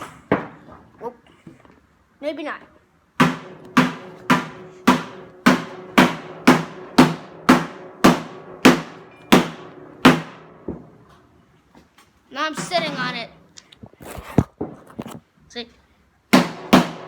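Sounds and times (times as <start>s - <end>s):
hammer ringing on steel tank: 3.2s - 11.0s.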